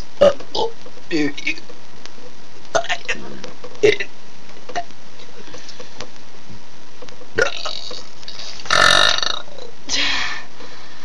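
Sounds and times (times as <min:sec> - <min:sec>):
person burping: 0:02.7 - 0:04.1, 0:07.4 - 0:09.7.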